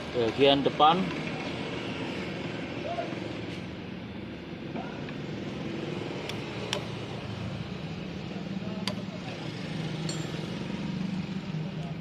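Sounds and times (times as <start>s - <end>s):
hand tools clicking: 10.0s - 10.5s.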